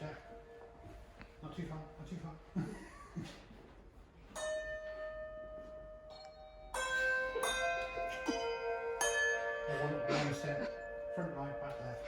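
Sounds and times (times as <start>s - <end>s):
handbells ringing: 4.4s - 12.0s.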